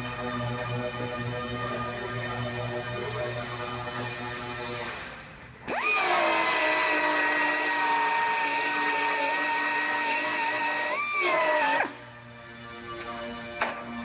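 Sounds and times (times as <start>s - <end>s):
power tool high-pitched whine: 3.4s - 12.1s.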